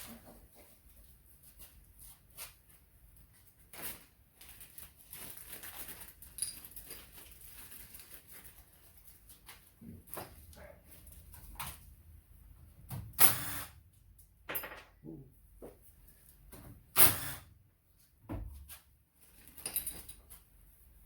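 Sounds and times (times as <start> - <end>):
hand tools and metal parts clicking: 6.3 - 6.8, 19.4 - 20.4.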